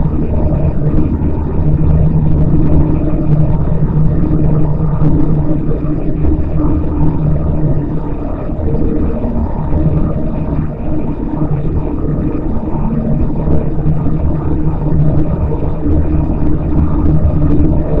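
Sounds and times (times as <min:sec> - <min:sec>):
distorted robotic low drone: 0:08.4 - 0:18.0.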